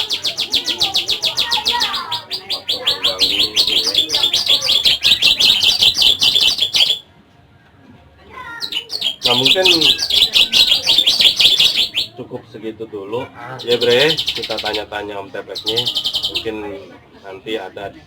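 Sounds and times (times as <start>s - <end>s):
bird singing high chirps: 0.0s - 7.0s, 8.6s - 12.2s, 13.6s - 16.6s.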